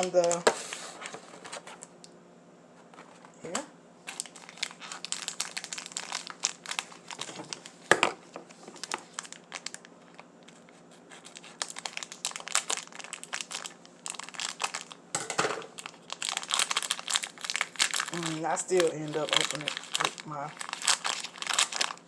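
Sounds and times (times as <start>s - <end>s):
packaging crinkling: 0.0s - 2.0s, 4.0s - 22.0s.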